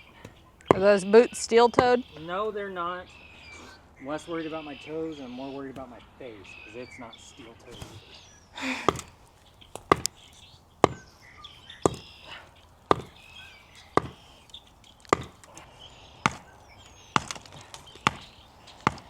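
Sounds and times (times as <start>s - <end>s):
hand tool striking concrete: 8.9s - 9.1s, 9.8s - 10.1s, 10.8s - 11.0s, 12.9s - 13.2s, 14.0s - 14.2s, 15.1s - 15.5s, 17.2s - 19.0s.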